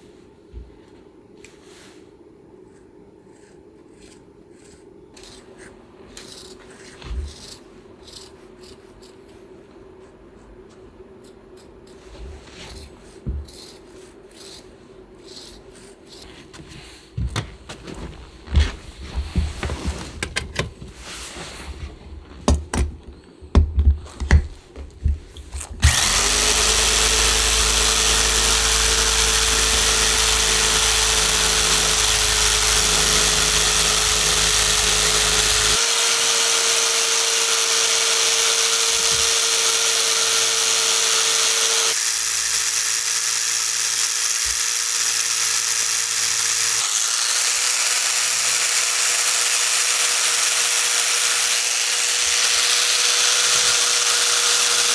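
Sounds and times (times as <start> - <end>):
hand work knocks and clicks: 16.5 - 21.0, 21.8 - 25.9
electric power tool humming: 25.0 - 54.9.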